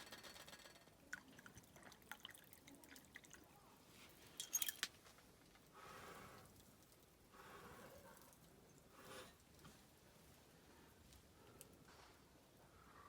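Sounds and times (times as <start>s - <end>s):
liquid pouring into cup: 1.0s - 3.5s
bottle and cup clinking: 4.4s - 4.9s.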